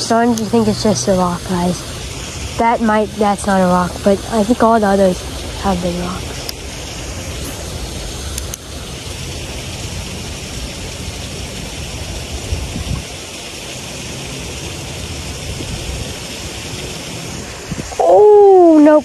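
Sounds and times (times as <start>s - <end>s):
water rushing over spillway: 0.0s - 19.0s
faint clicks: 8.3s - 8.6s.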